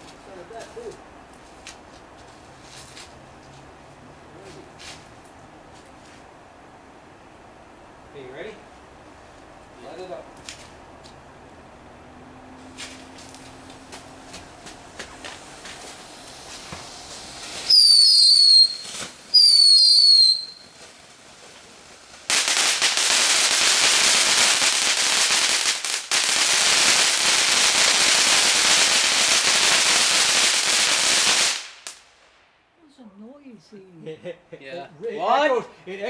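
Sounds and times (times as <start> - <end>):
firework sparks hissing: 12.8 - 32.3
firework falling whistles: 15.2 - 21.6.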